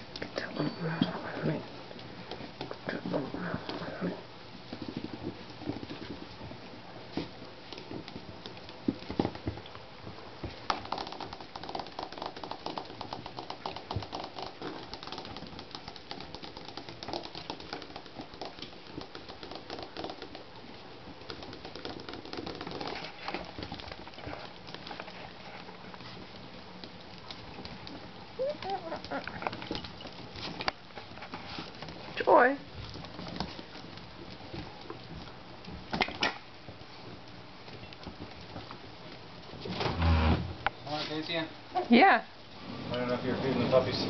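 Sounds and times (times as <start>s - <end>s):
puppies mouthing and pawing: 0.0s - 39.7s
puppies grunting and whimpering: 28.4s - 29.8s.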